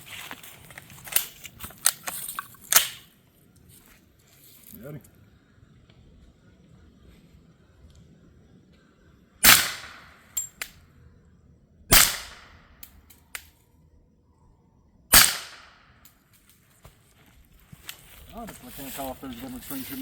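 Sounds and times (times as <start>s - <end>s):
suppressed gunshots: 9.4s - 10.3s, 11.9s - 12.7s, 15.1s - 15.9s.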